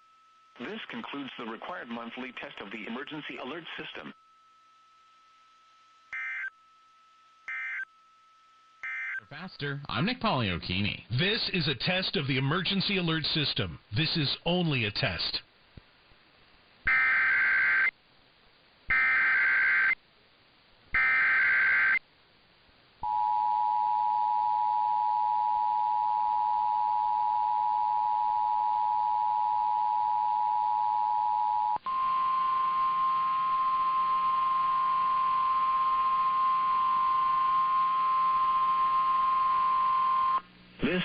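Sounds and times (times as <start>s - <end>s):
screechy digital data bursts: 16.9s - 17.9s, 18.9s - 20.0s, 21.0s - 22.0s.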